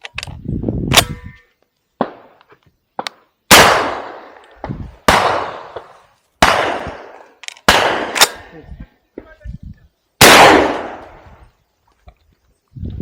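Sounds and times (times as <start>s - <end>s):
shotgun blasts with echo: 3.5s - 8.5s, 10.2s - 11.2s.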